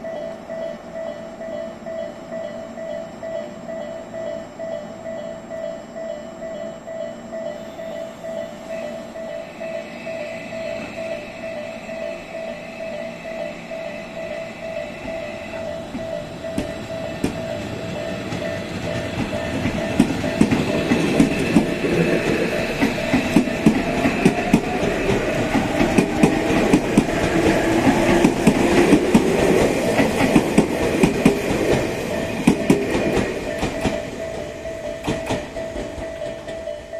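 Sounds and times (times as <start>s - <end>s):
electric train passing: 0.0s - 36.9s
steady pulsing tone: 0.0s - 36.9s
train wheels clicking over rail joints: 9.2s - 36.9s.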